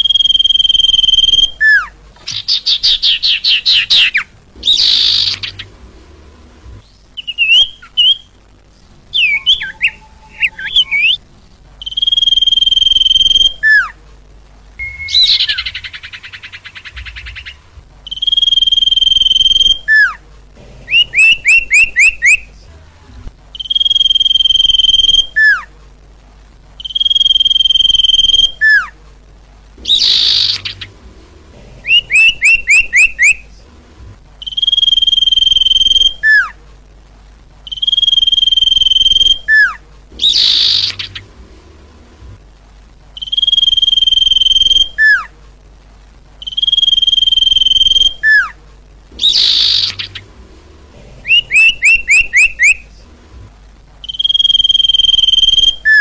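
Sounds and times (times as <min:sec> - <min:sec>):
bird song whistle: 0:00.0 - 0:05.7, 0:06.8 - 0:08.4, 0:09.1 - 0:11.2, 0:11.8 - 0:14.0, 0:14.8 - 0:20.2, 0:20.9 - 0:22.5, 0:23.5 - 0:25.7, 0:26.8 - 0:29.0, 0:29.8 - 0:30.9, 0:31.9 - 0:33.4, 0:34.4 - 0:36.6, 0:37.6 - 0:41.3, 0:43.2 - 0:45.3, 0:46.4 - 0:48.6, 0:49.2 - 0:50.2, 0:51.3 - 0:52.8, 0:54.0 - 0:56.0
harsh bird call: 0:00.0 - 0:05.8, 0:09.1 - 0:11.2, 0:14.8 - 0:20.2, 0:29.8 - 0:31.0, 0:31.8 - 0:33.5, 0:37.7 - 0:41.4, 0:49.2 - 0:50.3, 0:51.2 - 0:52.8.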